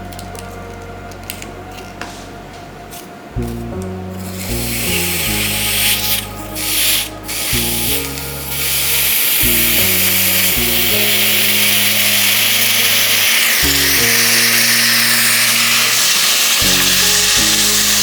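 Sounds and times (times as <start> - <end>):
background music low notes: 0.0 - 18.0
hot metal hissing on ice: 4.2 - 18.0.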